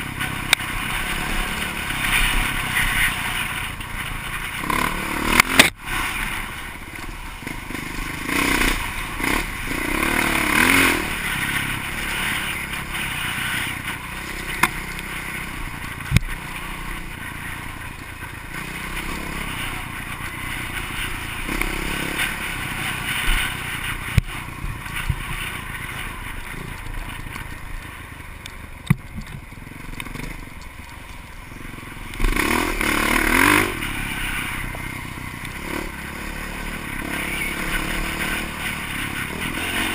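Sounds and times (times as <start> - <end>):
off-road vehicle engine revving: 0.0 - 27.1, 31.6 - 39.9.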